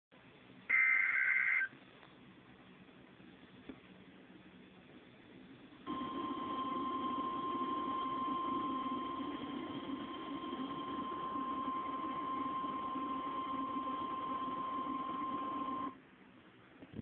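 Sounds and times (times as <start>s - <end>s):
steady alarm tone: 0.7s - 1.7s, 5.9s - 15.9s.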